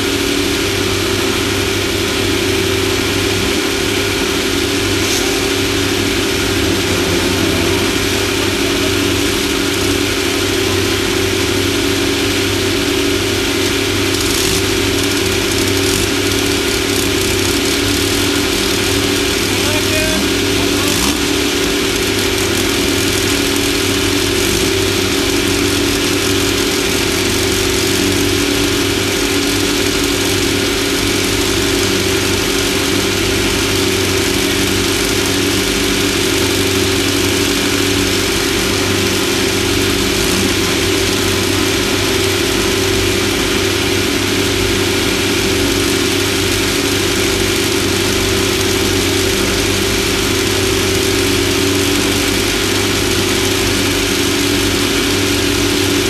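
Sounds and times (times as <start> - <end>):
engine running steadily: 0.0 - 56.0
even hiss: 4.6 - 10.3.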